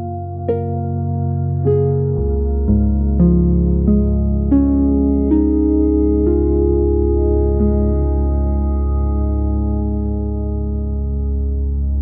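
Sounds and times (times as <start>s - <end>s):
calm instrumental music: 0.0s - 12.0s.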